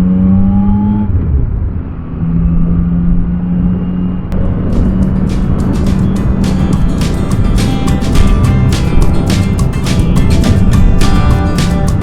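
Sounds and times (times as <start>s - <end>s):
motorcycle engine running: 4.4s - 12.0s
wind rushing: 4.4s - 12.0s.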